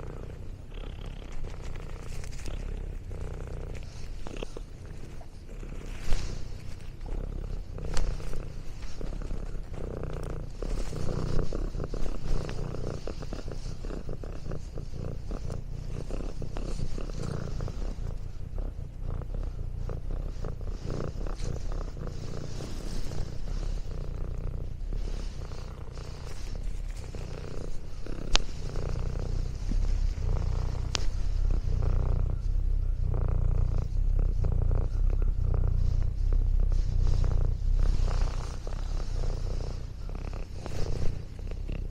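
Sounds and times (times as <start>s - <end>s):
cat purring: 0.0s - 41.9s.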